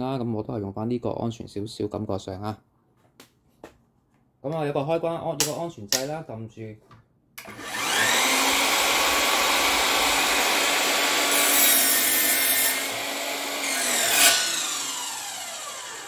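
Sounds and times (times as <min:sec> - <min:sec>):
power saw cutting wood: 0:07.4 - 0:16.0
saw motor winding down: 0:07.4 - 0:16.0.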